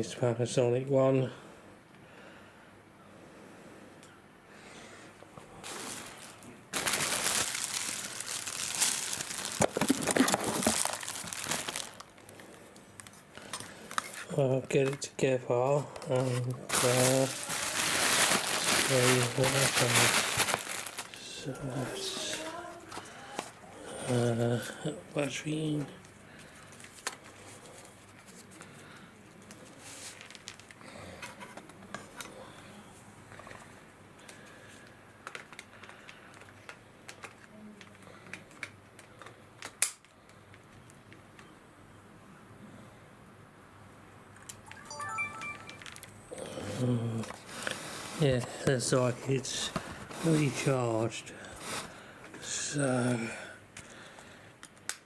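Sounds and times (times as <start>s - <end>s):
packaging crinkling: 5.6s - 14.2s, 16.1s - 22.4s, 29.8s - 30.8s.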